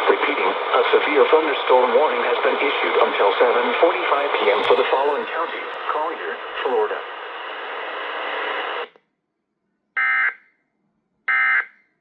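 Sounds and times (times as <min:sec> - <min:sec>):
broadcast hiss: 0:00.0 - 0:08.9.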